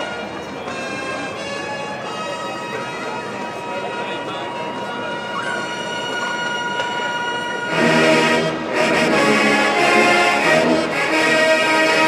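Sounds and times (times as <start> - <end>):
brass band chords: 7.3 - 12.0.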